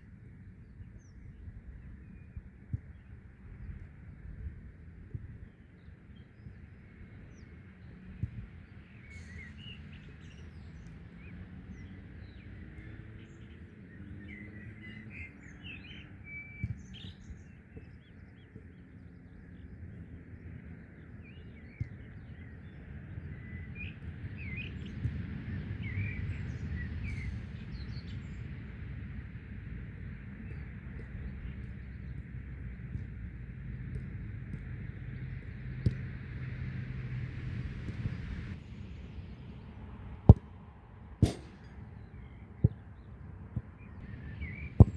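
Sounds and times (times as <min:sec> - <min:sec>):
birds chirping: 0:29.4 - 0:40.4, 0:41.2 - 0:44.9.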